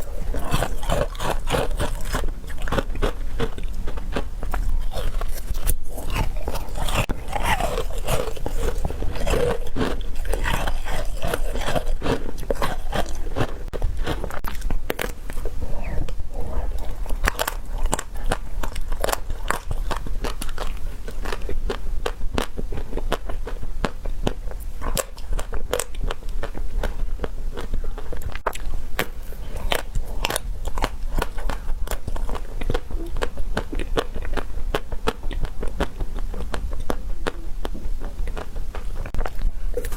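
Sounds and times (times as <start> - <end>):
chewing crunchy food: 0.0 - 39.9.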